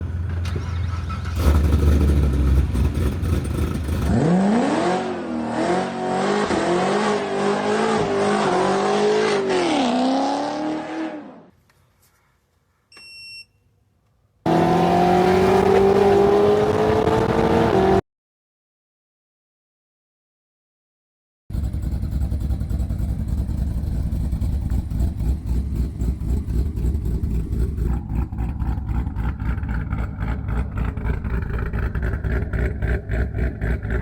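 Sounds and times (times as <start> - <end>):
car engine revving: 0.1 - 11.5, 14.5 - 18.0, 21.5 - 34.0
short beep: 12.9 - 13.7.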